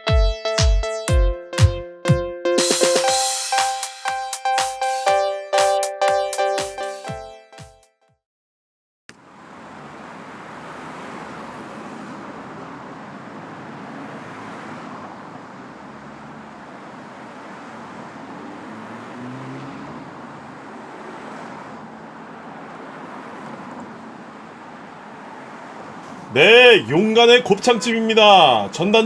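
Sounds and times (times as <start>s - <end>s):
road traffic noise: 9.1s - 29.0s.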